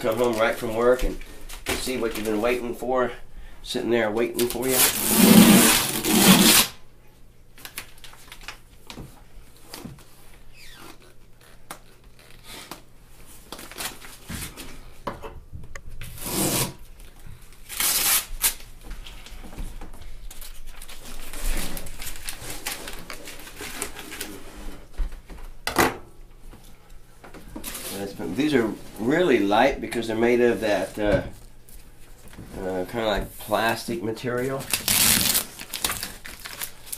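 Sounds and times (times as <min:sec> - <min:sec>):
packing material rustling and tearing: 0:00.0 - 0:02.6, 0:04.3 - 0:06.8, 0:07.6 - 0:08.7, 0:13.6 - 0:14.6, 0:16.1 - 0:18.7, 0:20.2 - 0:24.7, 0:27.6 - 0:29.2, 0:34.4 - 0:36.9.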